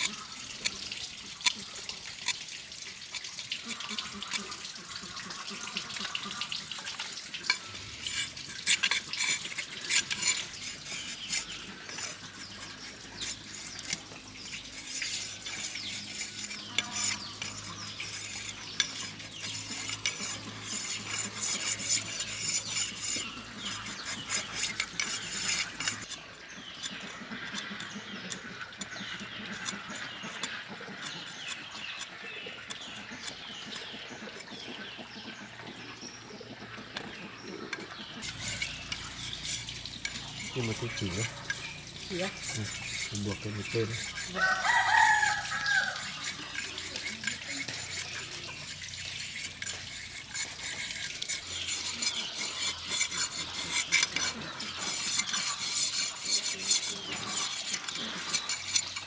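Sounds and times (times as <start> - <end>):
utensils clinking and scraping: 0.0 - 35.0, 36.8 - 59.0
stirring: 0.0 - 59.0.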